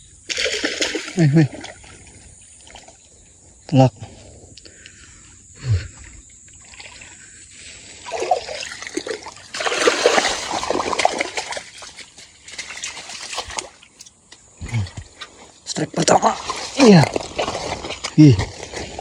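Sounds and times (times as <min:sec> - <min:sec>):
fish thrashing and splashing water: 0:00.3 - 0:02.0, 0:08.0 - 0:14.0, 0:16.3 - 0:19.0.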